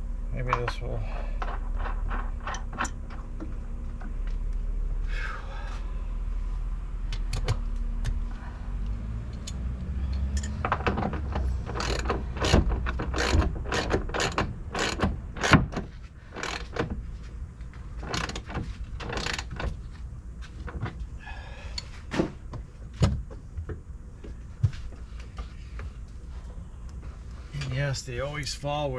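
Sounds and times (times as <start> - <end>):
metallic clicks of hand tools: 9.3 - 10.8.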